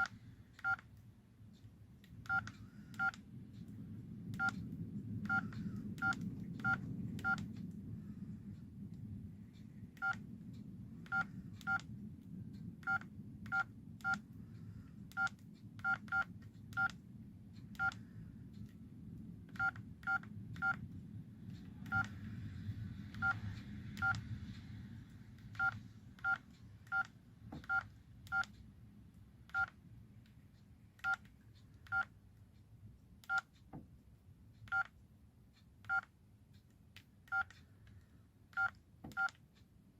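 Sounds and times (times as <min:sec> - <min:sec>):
phone keypad beeps: 0:00.0 - 0:00.8, 0:02.3 - 0:03.2, 0:04.4 - 0:04.6, 0:05.3 - 0:07.4, 0:10.0 - 0:10.2, 0:11.1 - 0:11.8, 0:12.8 - 0:14.2, 0:15.1 - 0:17.0, 0:17.8 - 0:18.0, 0:19.5 - 0:20.8, 0:21.9 - 0:22.2, 0:25.6 - 0:28.5, 0:29.5 - 0:29.8, 0:31.9 - 0:32.1, 0:34.7 - 0:34.9, 0:35.8 - 0:36.1, 0:37.3 - 0:37.6, 0:38.5 - 0:39.4.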